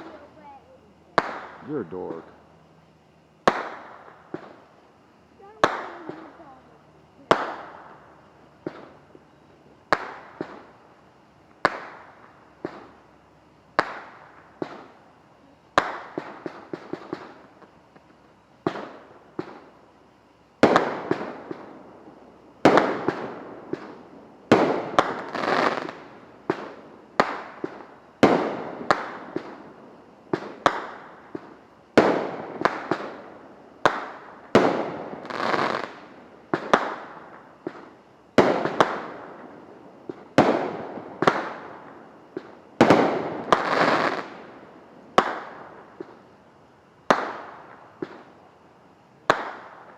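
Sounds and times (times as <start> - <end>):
fireworks bangs: 0.0 - 2.3, 3.4 - 4.6, 5.4 - 9.0, 9.8 - 10.8, 20.6 - 21.9, 22.6 - 46.2, 47.1 - 48.3, 49.2 - 49.9
fireworks crackling: 0.0 - 49.9.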